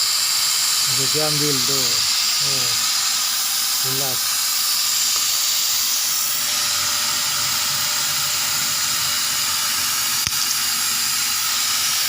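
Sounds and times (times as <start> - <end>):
laser cutter hiss and whine: 0.0 - 12.0
sharp click: 10.2 - 10.6.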